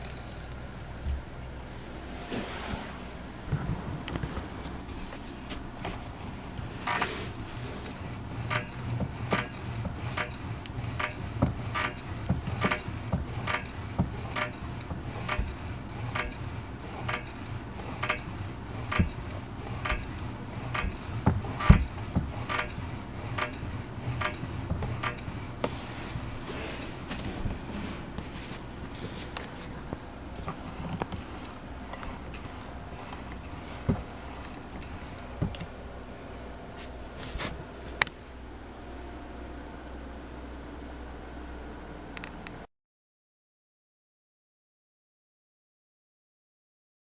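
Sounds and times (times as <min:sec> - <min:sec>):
ab exerciser clicking: 0:07.9 - 0:27.1.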